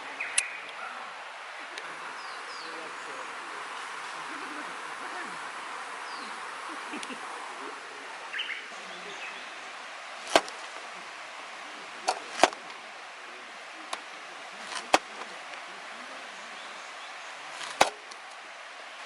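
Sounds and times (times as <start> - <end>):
steady low hiss: 0.0 - 19.0
firewood popping: 10.2 - 10.8, 12.1 - 12.8, 17.6 - 18.3.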